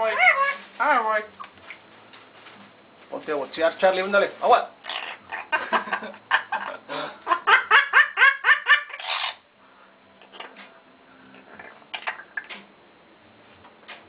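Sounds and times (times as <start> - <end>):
parrot repeated calls: 0.0 - 1.2, 4.8 - 5.5, 7.5 - 9.4.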